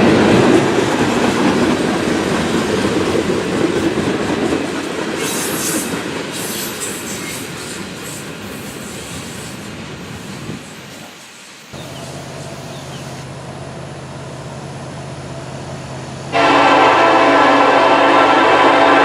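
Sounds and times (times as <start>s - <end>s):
freight train rumbling past: 0.0s - 19.0s
locomotive engine drone: 11.8s - 18.9s
locomotive air horn chord: 16.3s - 19.0s.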